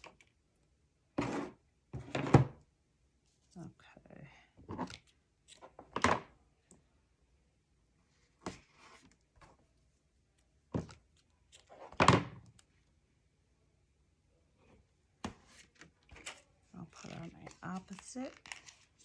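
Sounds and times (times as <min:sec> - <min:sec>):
paper rustling: 0:15.4 - 0:19.0.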